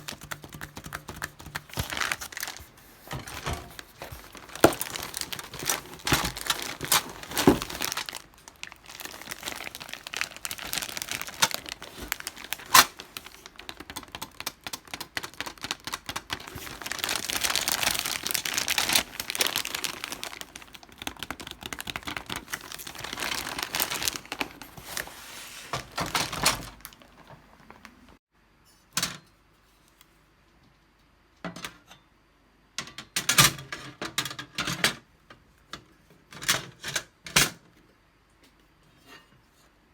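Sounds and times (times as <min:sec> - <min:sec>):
wrapping crinkling and tearing: 0:00.0 - 0:28.2.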